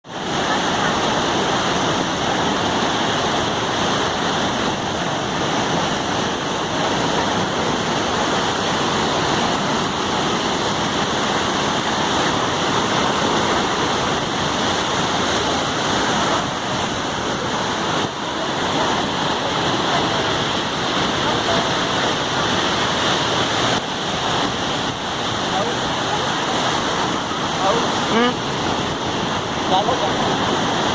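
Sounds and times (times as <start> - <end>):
waterfall rushing: 0.0 - 30.9.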